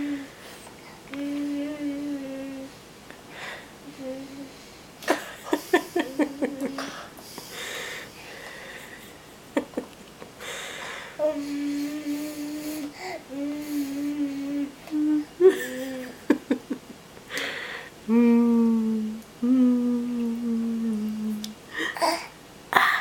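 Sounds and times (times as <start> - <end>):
breathing: 3.3 - 3.8, 6.8 - 9.0, 10.4 - 14.1, 17.3 - 18.0, 21.7 - 22.0
baby humming: 11.1 - 16.2.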